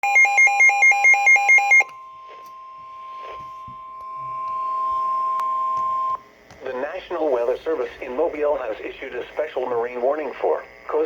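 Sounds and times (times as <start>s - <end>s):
rapid electronic alert beeping: 0.0s - 1.9s
steady warning alarm tone: 0.0s - 6.3s.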